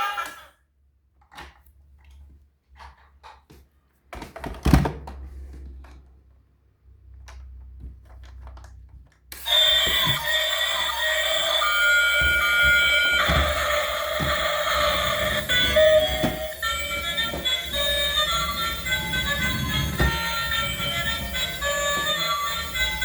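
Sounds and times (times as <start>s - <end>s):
toy electronic siren tune: 9.4s - 23.0s.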